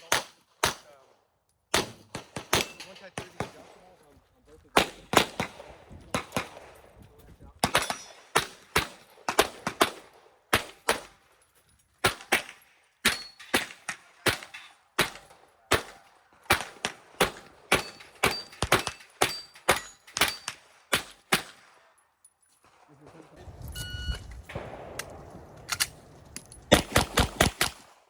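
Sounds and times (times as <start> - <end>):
pistol shots in quick pairs: 0.0 - 1.0, 1.7 - 3.9, 4.8 - 7.0, 7.6 - 11.2, 12.0 - 21.9, 24.4 - 28.0.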